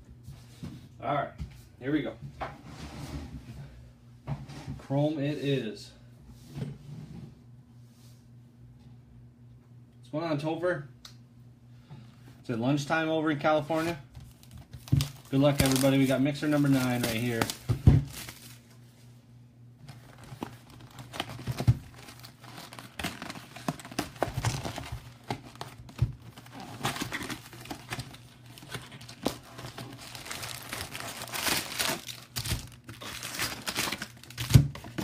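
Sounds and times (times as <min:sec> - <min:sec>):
wrappers crinkling and tearing: 0:14.3 - 0:18.7, 0:19.8 - 0:35.0.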